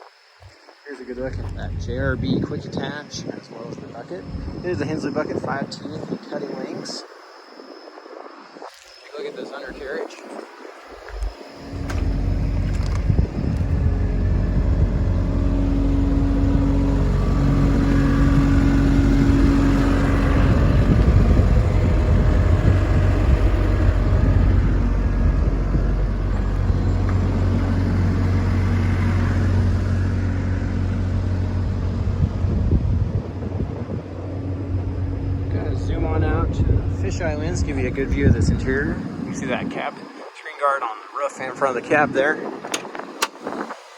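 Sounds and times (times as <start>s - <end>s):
high-pitched whine: 0.0s - 43.9s
excavator diesel engine hum: 0.9s - 3.0s, 10.9s - 39.6s.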